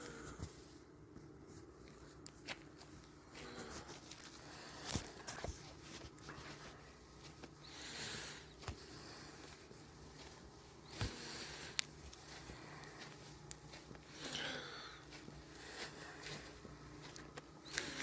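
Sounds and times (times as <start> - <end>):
faint footsteps: 0.1 - 18.0.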